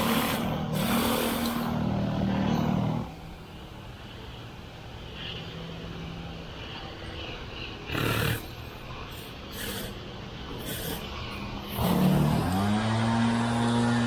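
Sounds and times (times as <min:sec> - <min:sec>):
small gasoline engine running: 0:00.0 - 0:03.2, 0:10.5 - 0:14.0.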